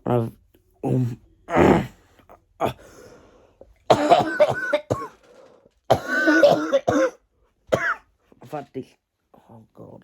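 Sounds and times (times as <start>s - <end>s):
boy clearing throat: 3.9s - 5.2s, 5.9s - 7.2s
boy coughing: 3.9s - 5.2s, 5.9s - 8.1s.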